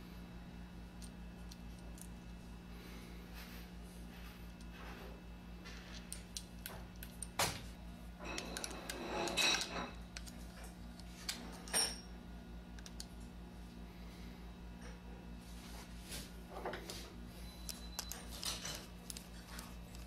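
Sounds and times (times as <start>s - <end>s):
steady low hum: 0.0s - 20.0s
metal parts clinking and scraping: 8.2s - 10.4s.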